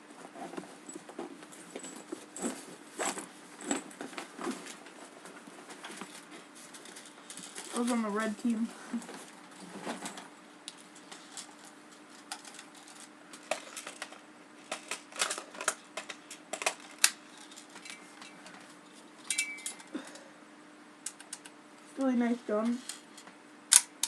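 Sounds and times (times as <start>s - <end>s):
faint steady hum: 0.0s - 24.0s
toy gun clicks and clacks: 23.7s - 24.0s.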